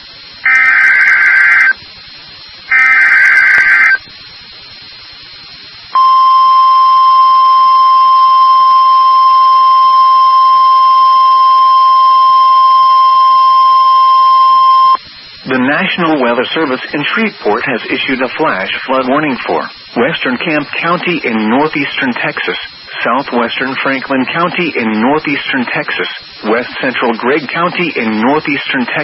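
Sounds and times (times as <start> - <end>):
buzzing digital data screech: 0.4 - 1.8, 2.7 - 4.0.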